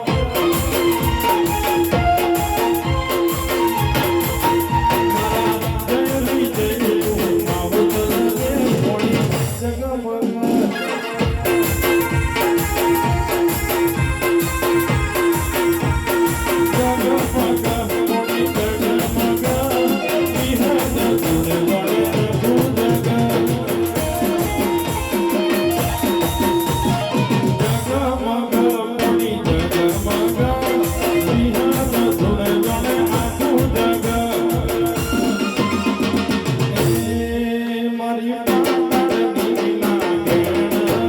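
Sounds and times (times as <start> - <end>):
fast steady drum beat: 0.0 - 37.6, 38.5 - 41.0
melody instruments playing: 23.9 - 27.9.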